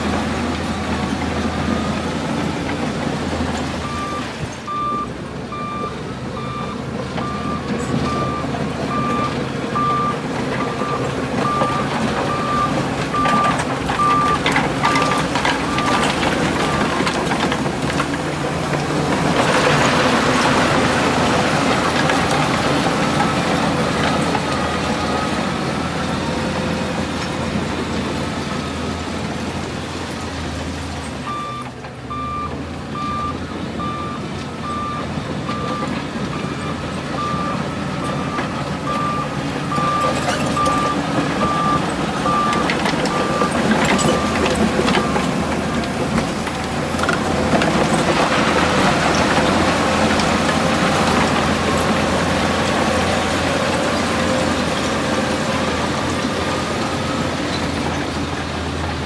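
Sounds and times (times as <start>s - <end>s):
heavy diesel machinery running: 0.0s - 59.0s
reversing alarm beeping: 3.7s - 17.5s, 31.2s - 45.5s.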